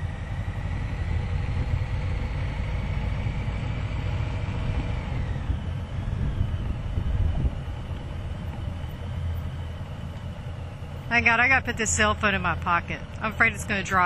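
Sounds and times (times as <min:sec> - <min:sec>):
motorcycle engine rumbling: 0:00.0 - 0:14.0.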